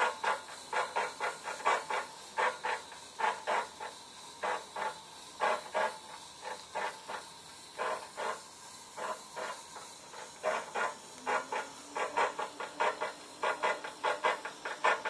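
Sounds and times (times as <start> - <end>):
spin bike scraping hissing bursts: 0.0 - 15.0.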